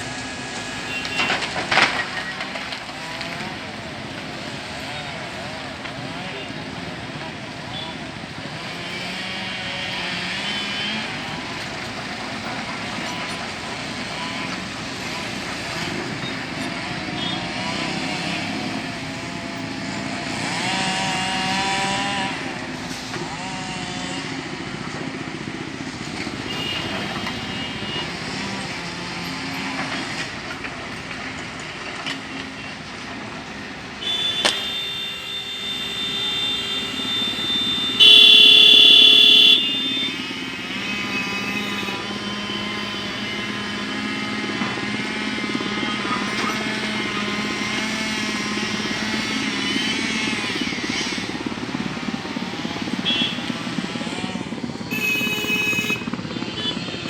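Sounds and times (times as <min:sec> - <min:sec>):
vehicle engines revving: 0:00.0 - 0:57.0
loud blaring horn tone: 0:17.0 - 0:18.5, 0:26.4 - 0:28.4, 0:34.0 - 0:44.2, 0:47.4 - 0:53.8, 0:54.6 - 0:57.0.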